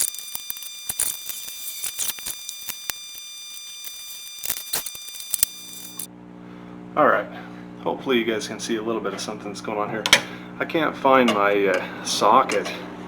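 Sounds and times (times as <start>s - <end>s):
metal parts clicking and tapping: 11.3s - 11.9s, 12.5s - 12.8s.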